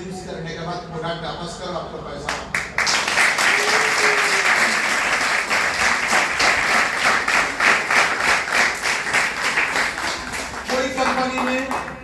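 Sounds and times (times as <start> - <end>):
audience applauding: 2.5 - 12.0.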